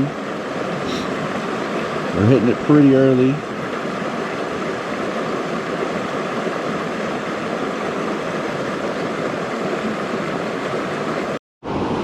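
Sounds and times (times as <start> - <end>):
creek water rushing over rocks: 3.4 - 11.4.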